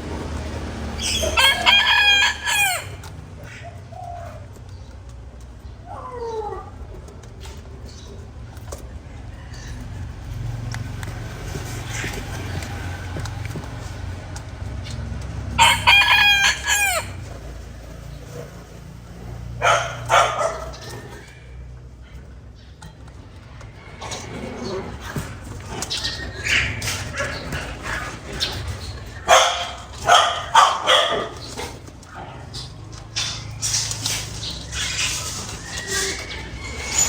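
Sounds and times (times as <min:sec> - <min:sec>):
harsh bird calls: 0:00.1 - 0:04.9, 0:14.8 - 0:18.4, 0:23.5 - 0:37.0
rooster crowing: 0:01.0 - 0:03.1, 0:15.6 - 0:17.3.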